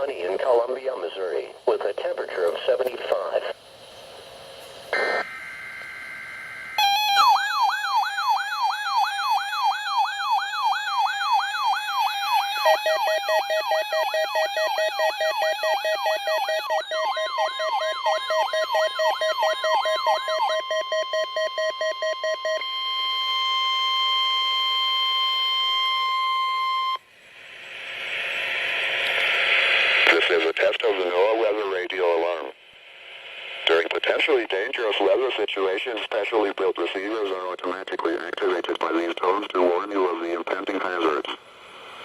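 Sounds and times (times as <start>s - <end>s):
steady warning alarm tone: 4.9s - 29.5s
warbling siren: 5.0s - 29.1s
rapid beeping: 12.2s - 22.6s.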